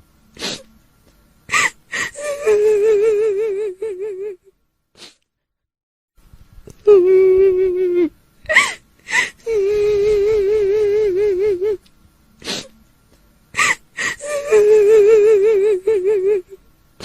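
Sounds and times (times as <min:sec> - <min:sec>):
high female-sounding wail: 0:01.5 - 0:04.4, 0:06.8 - 0:11.8, 0:13.6 - 0:16.6
sharp gasping breaths: 0:08.5 - 0:09.4, 0:12.4 - 0:12.8, 0:13.6 - 0:14.3.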